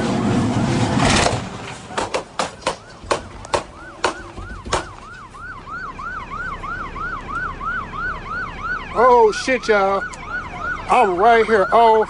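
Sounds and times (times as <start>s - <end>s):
police siren yelping: 2.0s - 12.0s.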